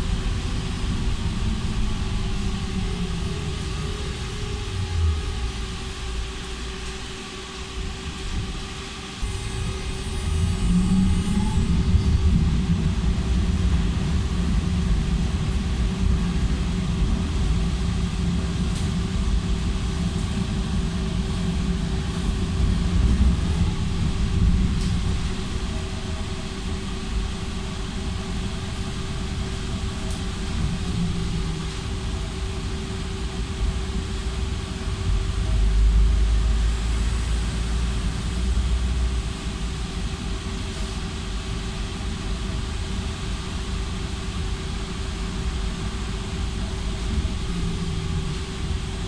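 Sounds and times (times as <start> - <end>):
electrical hum: 0.0 - 49.0
tram rumble: 0.0 - 49.0.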